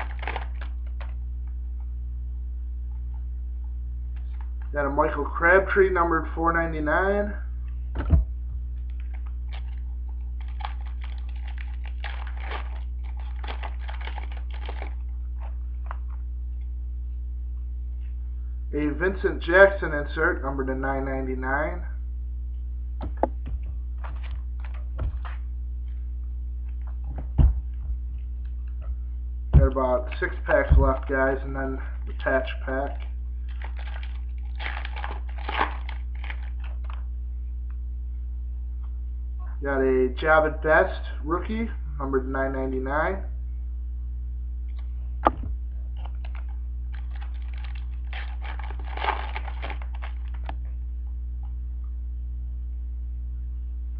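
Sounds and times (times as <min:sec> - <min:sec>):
trading cards and wrapper crinkling: 0:00.0 - 0:01.2, 0:08.9 - 0:16.1, 0:24.0 - 0:25.4, 0:32.0 - 0:37.0, 0:46.0 - 0:50.6
low electrical hum: 0:00.0 - 0:53.9.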